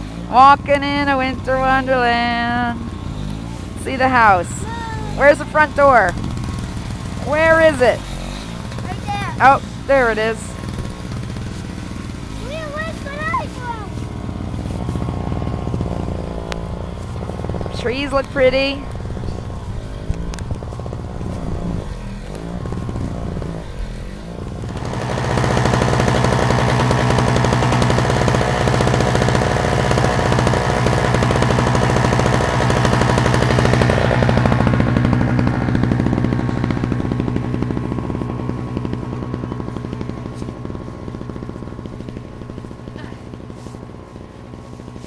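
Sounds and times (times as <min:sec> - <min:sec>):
engine running: 0:00.0 - 0:45.0.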